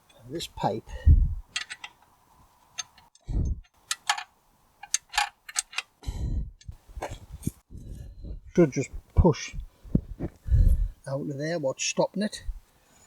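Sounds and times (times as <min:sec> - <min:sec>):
metal parts clinking: 0:01.5 - 0:02.0, 0:03.9 - 0:05.9
dull thumps: 0:08.8 - 0:10.8.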